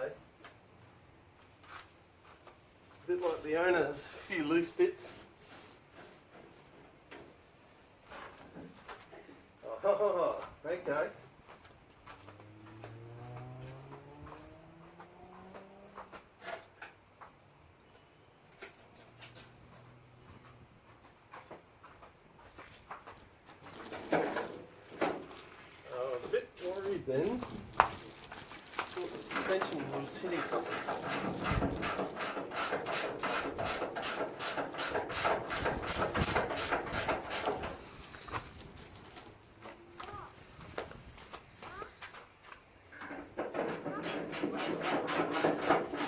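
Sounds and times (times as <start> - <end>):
hand tool rasping strokes: 27.4 - 37.9, 43.7 - 46.0.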